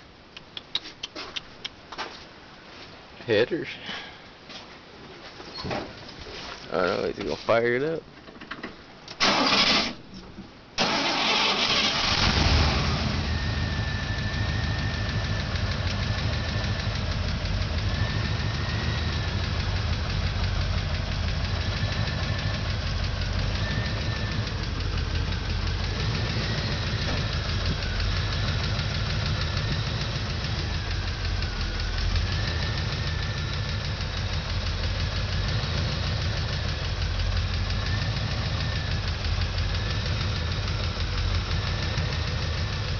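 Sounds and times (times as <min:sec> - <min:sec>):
truck engine starting and idling: 0:08.4 - 0:10.1, 0:10.7 - 0:42.9.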